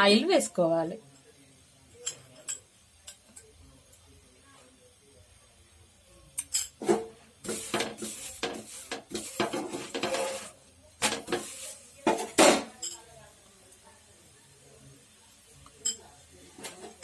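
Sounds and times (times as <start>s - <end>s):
metal utensils scraping a pan: 6.4s - 13.0s, 15.8s - 17.0s.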